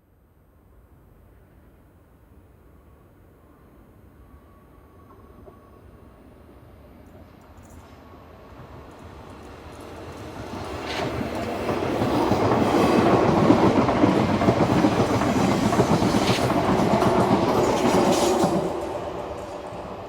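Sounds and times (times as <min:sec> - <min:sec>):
train wheels rumbling on rails: 0:06.5 - 0:20.0
sharp clicks of train wheels: 0:07.0 - 0:20.0.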